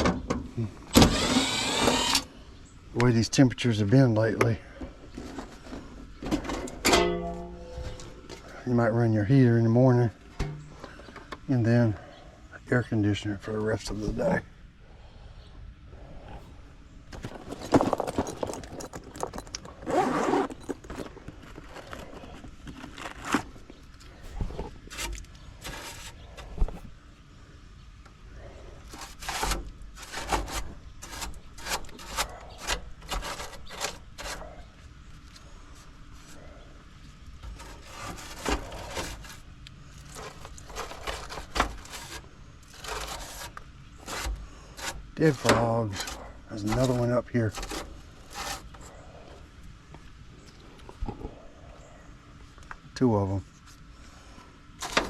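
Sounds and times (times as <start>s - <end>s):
scraping and rubbing: 5.1s - 8.9s, 17.1s - 26.9s, 28.4s - 49.5s, 54.8s - 55.0s.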